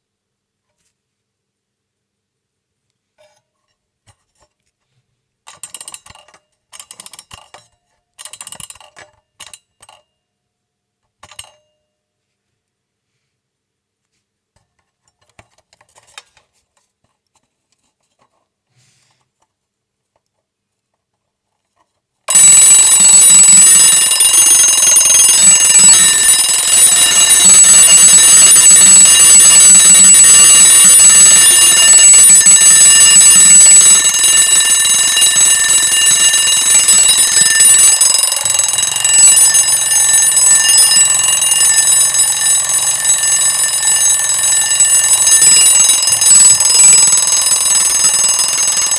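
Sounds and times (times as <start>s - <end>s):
alarm clock bell ringing: 22.3s - 48.9s.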